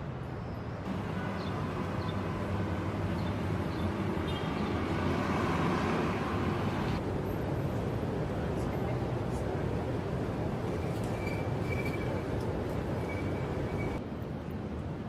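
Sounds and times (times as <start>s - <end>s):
road traffic rumble: 0.0s - 15.0s
vehicle passing: 0.9s - 7.0s.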